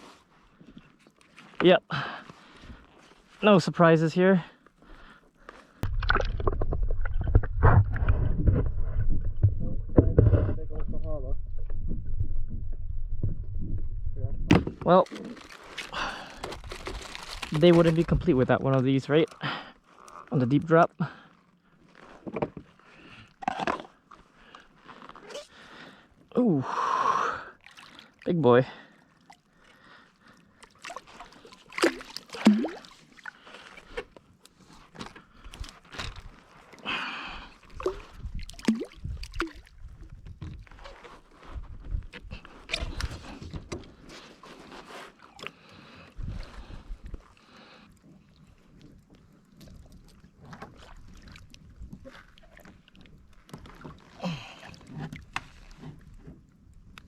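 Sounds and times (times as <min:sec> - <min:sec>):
water splashes: 0:05.8 - 0:09.2, 0:27.6 - 0:34.0, 0:35.4 - 0:40.6, 0:48.3 - 0:55.3
fish handled on plastic kayak: 0:14.5 - 0:20.3, 0:21.3 - 0:26.3, 0:29.1 - 0:57.0.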